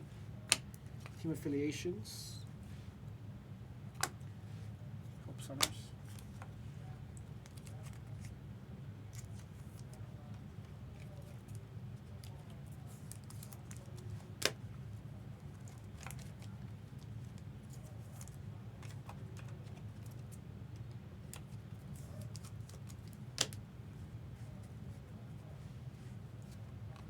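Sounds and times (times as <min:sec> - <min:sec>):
steady low hum: 0:00.0 - 0:27.0
trading cards rustling: 0:11.0 - 0:14.6.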